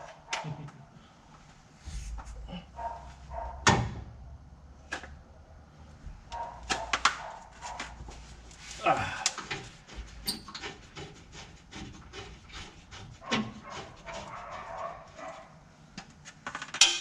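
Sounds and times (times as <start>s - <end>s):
tools knocking and clicking: 16.0s - 17.0s.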